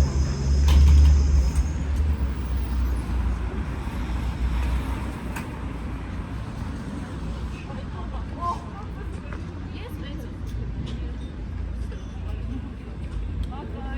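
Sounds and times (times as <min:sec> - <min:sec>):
vehicle passing with engine rumble: 0:00.0 - 0:07.5
traffic noise: 0:00.0 - 0:13.9.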